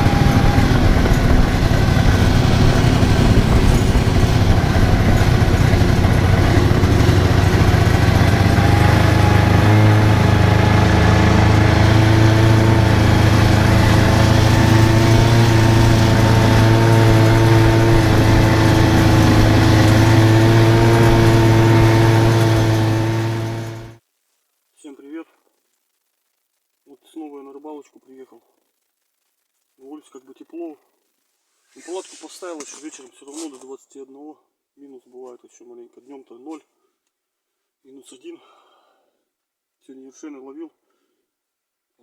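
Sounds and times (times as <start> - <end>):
small engine running: 0.0 - 24.0.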